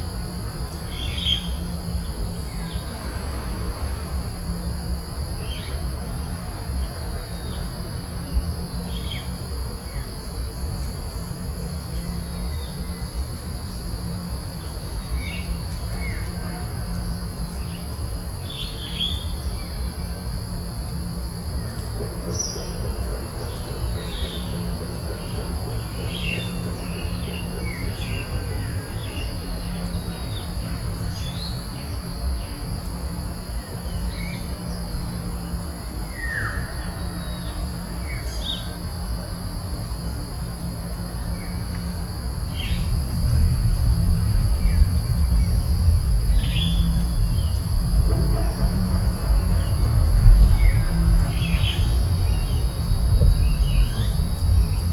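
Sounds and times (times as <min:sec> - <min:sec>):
high-pitched insect drone: 0:00.0 - 0:54.9
low rumble: 0:42.7 - 0:54.9.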